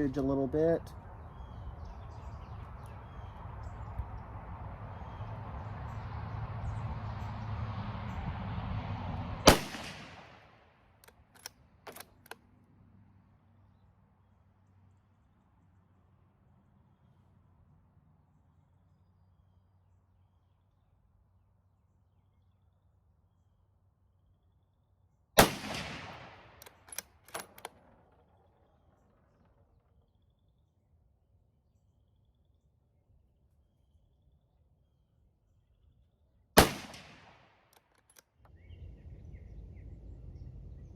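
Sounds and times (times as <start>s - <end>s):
rifle shot: 9.5s - 10.5s, 25.4s - 28.1s, 36.6s - 37.6s
rifle bolt metallic clicks: 11.0s - 12.4s, 25.4s - 28.0s, 36.6s - 38.3s.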